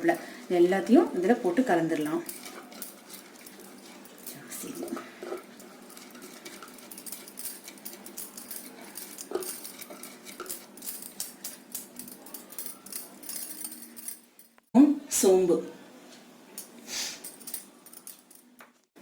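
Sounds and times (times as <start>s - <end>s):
spoon clinking in mixing bowl: 0.1s - 14.3s.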